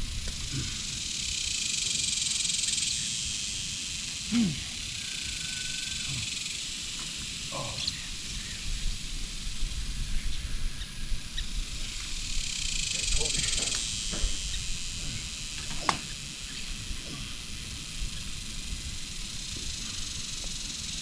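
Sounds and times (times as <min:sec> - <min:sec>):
high-pitched insect buzz: 0:00.0 - 0:21.0.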